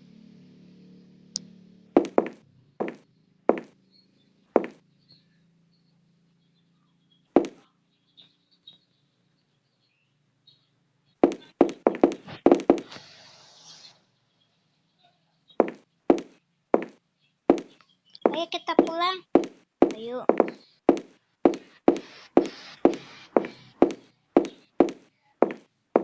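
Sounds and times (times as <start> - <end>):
short sharp knocks: 2.0 - 3.7, 4.6 - 4.8, 7.4 - 7.6, 11.2 - 13.0, 15.6 - 26.0.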